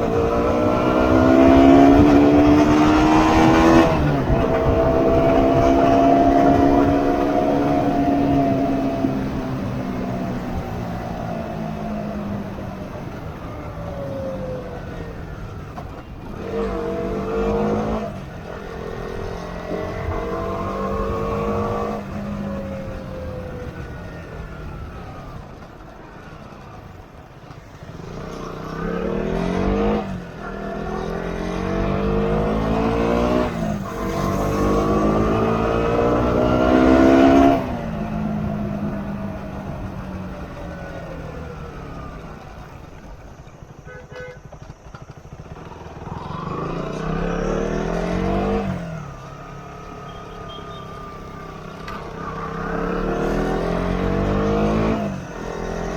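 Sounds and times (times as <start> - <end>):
motorcycle engine accelerating: 0.0 - 55.9.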